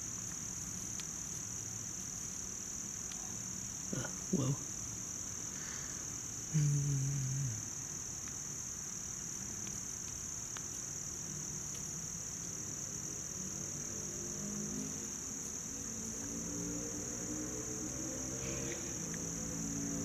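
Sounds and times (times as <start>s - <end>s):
shrill insect chorus: 0.6s - 20.0s
faint low hum: 5.8s - 8.1s.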